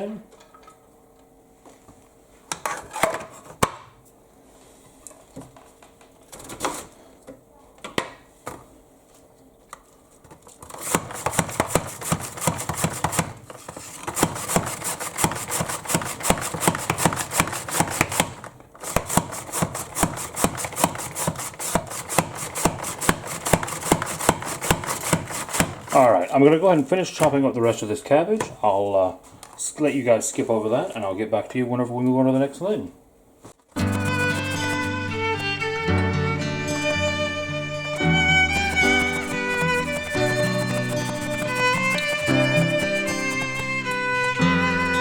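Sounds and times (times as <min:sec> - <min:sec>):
knife chopping cabbage: 0:10.6 - 0:26.0, 0:33.8 - 0:34.9, 0:38.2 - 0:43.7.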